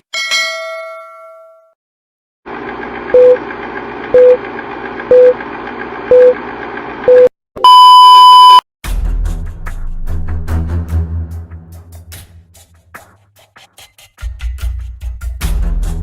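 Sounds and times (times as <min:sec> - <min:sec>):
electronic countdown beeps: 0:03.2 - 0:03.4, 0:04.2 - 0:04.4, 0:05.1 - 0:05.4, 0:06.1 - 0:06.4, 0:07.1 - 0:08.6.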